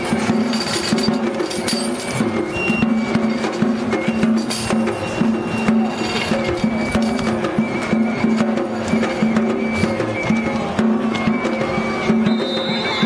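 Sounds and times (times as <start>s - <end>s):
drums beaten in steady rhythm: 0.0s - 13.0s
flute high notes: 2.4s - 13.0s.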